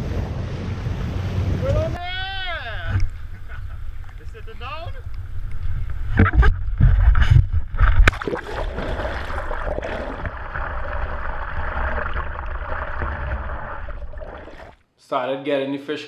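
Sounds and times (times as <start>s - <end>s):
wind buffeting microphone: 0.0s - 2.0s
water rushing: 7.8s - 14.8s.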